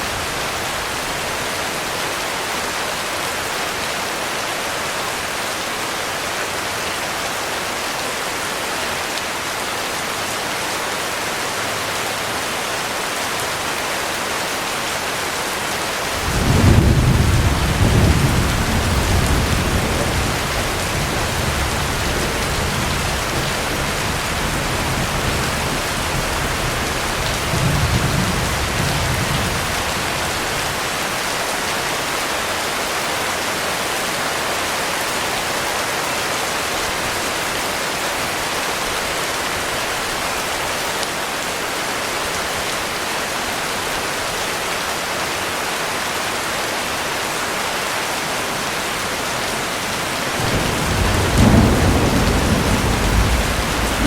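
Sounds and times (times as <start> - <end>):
heavy rain falling: 0.0 - 54.0
thunder rumbling: 16.2 - 30.3, 49.7 - 54.0.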